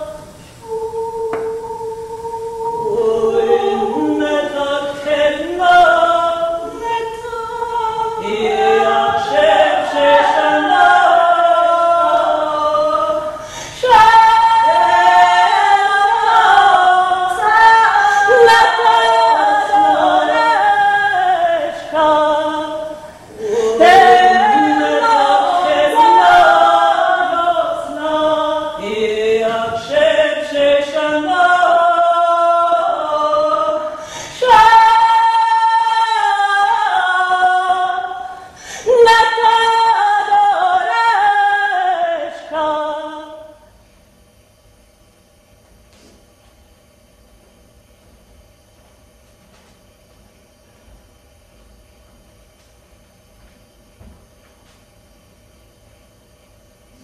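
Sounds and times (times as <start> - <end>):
choir singing a cappella: 0.0 - 43.5.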